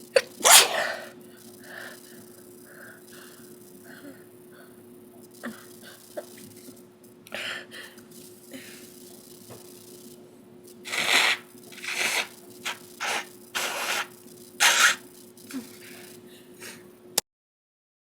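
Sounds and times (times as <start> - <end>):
person sneezing: 0.2 - 1.2, 10.9 - 12.3, 13.0 - 15.8.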